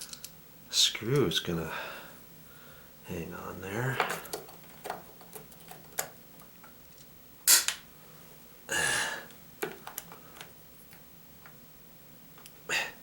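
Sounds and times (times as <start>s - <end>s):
loud sharp snap: 7.4s - 7.8s.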